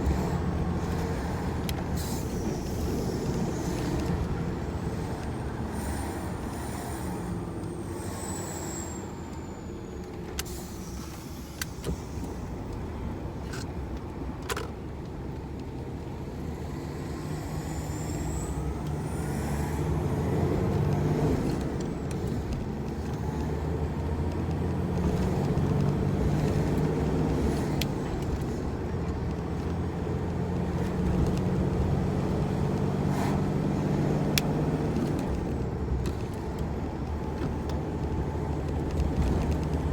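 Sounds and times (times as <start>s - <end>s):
truck diesel engine: 0.0s - 39.9s
high whistle: 7.9s - 10.1s.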